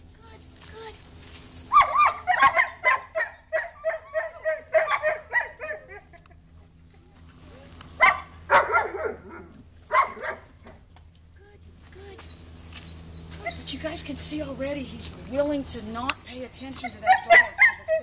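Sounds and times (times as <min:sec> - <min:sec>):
dog barking: 0:01.7 - 0:06.1, 0:08.0 - 0:10.6, 0:16.8 - 0:18.0.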